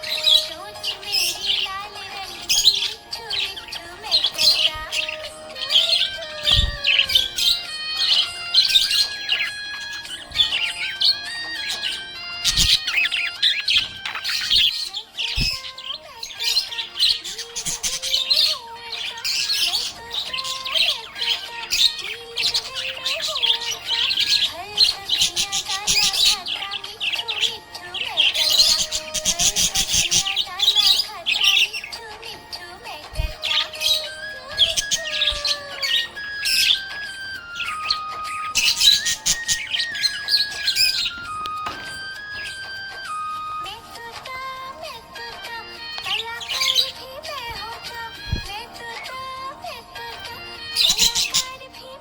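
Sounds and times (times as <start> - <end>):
budgerigars chirping and warbling: 0.0 - 52.0.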